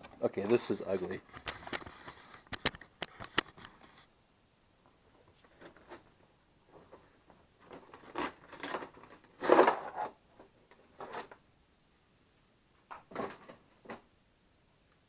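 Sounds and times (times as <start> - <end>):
packaging rustling and scraping: 0.2 - 4.1, 5.3 - 11.4.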